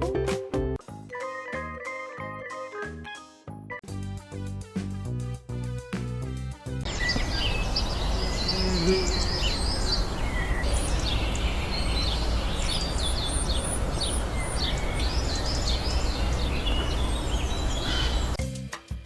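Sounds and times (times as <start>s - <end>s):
birds chirping: 6.9s - 18.4s.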